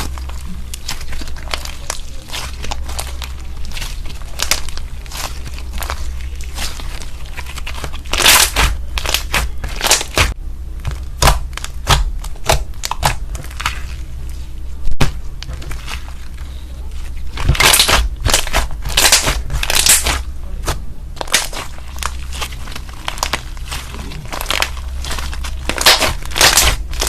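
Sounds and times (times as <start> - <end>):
slime squeezed by hand: 21.2 - 27.0.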